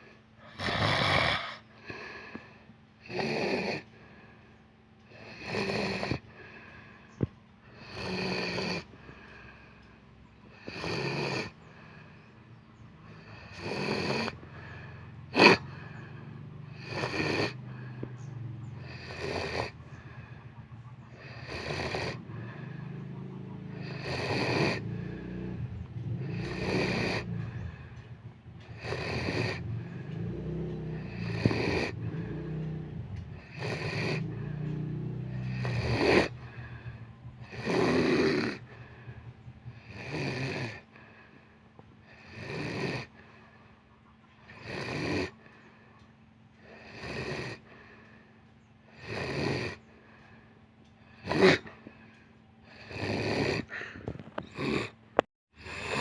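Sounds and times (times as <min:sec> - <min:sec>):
person snoring: 0:00.0 - 0:04.3, 0:05.1 - 0:06.9, 0:07.6 - 0:09.8, 0:10.5 - 0:12.2, 0:13.0 - 0:20.4, 0:21.1 - 0:27.9, 0:28.7 - 0:41.3, 0:42.0 - 0:43.2, 0:46.6 - 0:48.1, 0:48.9 - 0:49.8, 0:51.1 - 0:52.0, 0:52.6 - 0:55.0, 0:55.6 - 0:56.0.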